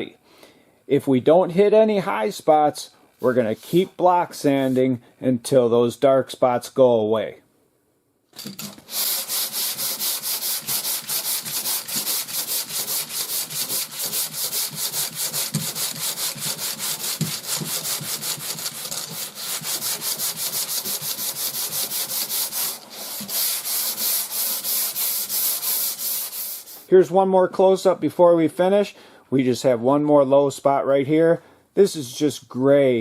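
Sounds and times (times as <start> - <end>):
sandpaper rubbing on car panel: 8.9 - 26.9.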